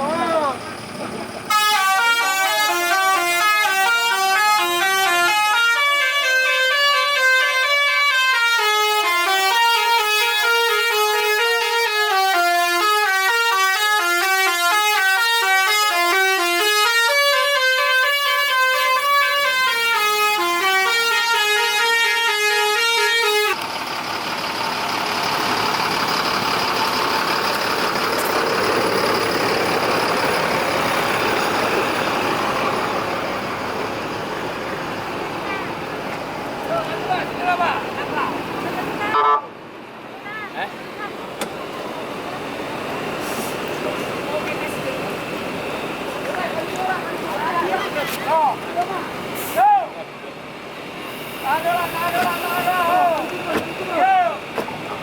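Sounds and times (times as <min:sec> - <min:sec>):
rushing vehicle noise: 0:00.0 - 0:55.0
multi-note bus horn melody: 0:01.5 - 0:23.6, 0:38.9 - 0:39.6.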